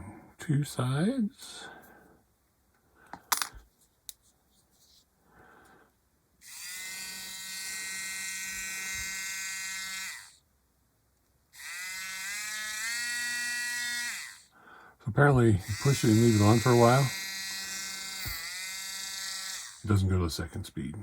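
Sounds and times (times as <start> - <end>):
handling clicks: 3.1 - 4.2
electric hobby drill whining: 6.4 - 10.4, 11.6 - 14.5, 15.6 - 19.9.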